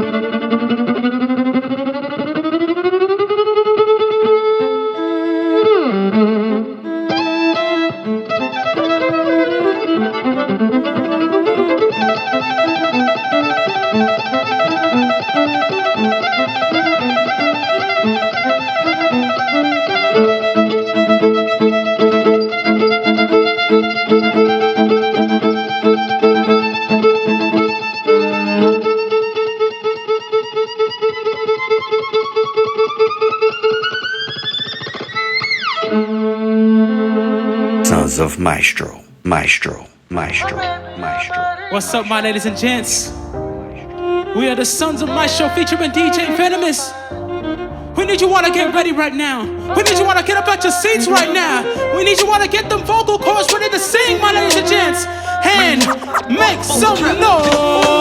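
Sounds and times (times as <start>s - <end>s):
violin music: 0.0s - 34.2s, 35.6s - 38.0s, 40.4s - 53.2s, 54.2s - 58.0s
backing track: 55.6s - 58.0s.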